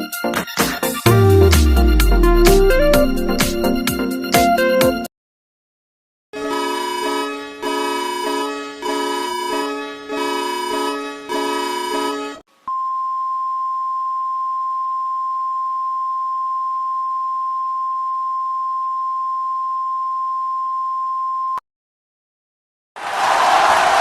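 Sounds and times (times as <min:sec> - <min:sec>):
steady pure alert tone: 0:01.1 - 0:03.8.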